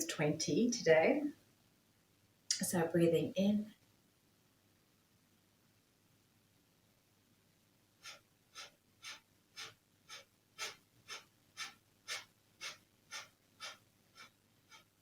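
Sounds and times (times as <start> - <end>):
forceful nasal exhalations: 8.0 - 14.3.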